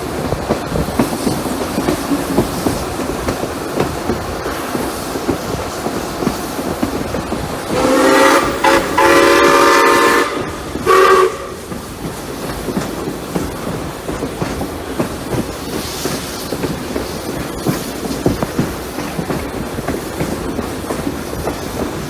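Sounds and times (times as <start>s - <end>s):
train running noise and wheel clicks: 0.0s - 22.0s
steam locomotive whistle: 7.7s - 11.6s.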